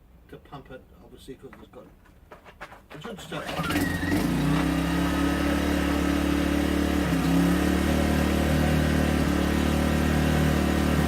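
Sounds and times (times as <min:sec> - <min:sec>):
generator running: 0:03.4 - 0:11.0.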